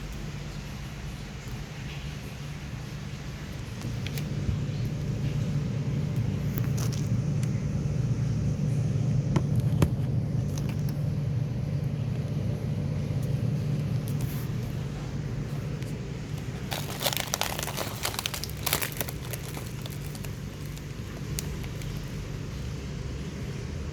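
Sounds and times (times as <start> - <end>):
refrigerator humming: 0.0 - 23.9.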